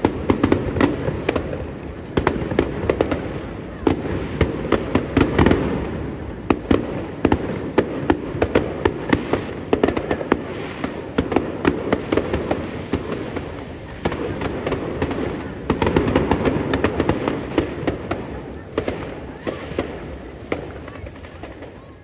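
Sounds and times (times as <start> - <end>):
fireworks cracking and banging: 0.0 - 22.0.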